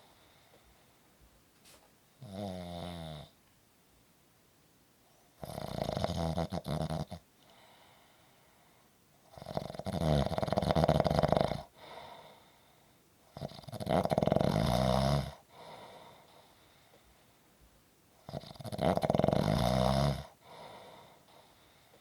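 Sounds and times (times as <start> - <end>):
fluttering snores: 5.4 - 7.2, 9.3 - 11.7, 13.4 - 15.4, 18.3 - 20.3
soft breath out: 7.4 - 9.0, 11.8 - 13.0, 15.5 - 17.5, 20.4 - 22.0.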